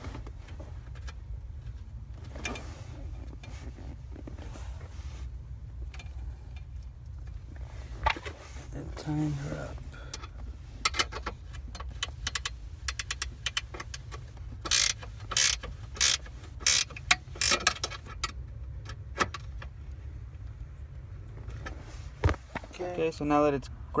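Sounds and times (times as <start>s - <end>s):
ratchet wrench clicking: 12.0s - 18.1s.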